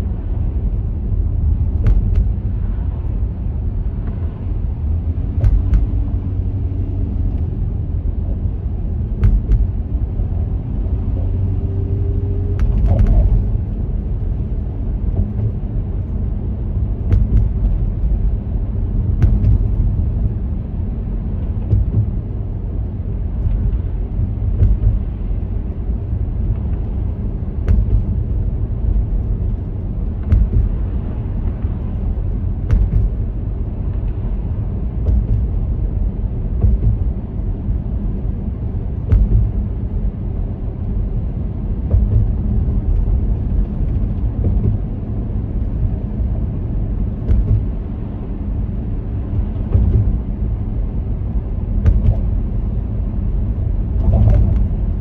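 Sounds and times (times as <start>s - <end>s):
car road rumble: 0.0s - 55.0s
tyres knocking on bumps: 5.4s - 6.2s, 9.1s - 9.9s, 30.2s - 31.0s, 32.7s - 33.3s, 39.0s - 39.9s, 41.8s - 43.0s, 51.8s - 52.6s.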